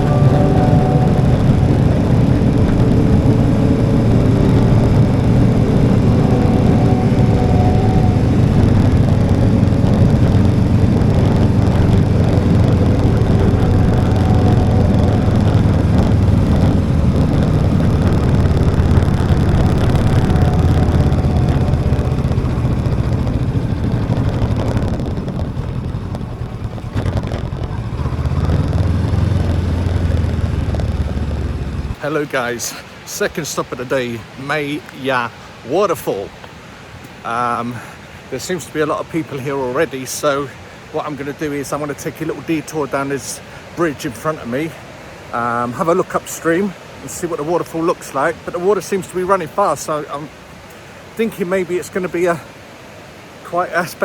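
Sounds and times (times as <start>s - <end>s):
motorcycle engine: 0.0s - 32.0s
wind rumble: 0.0s - 32.0s.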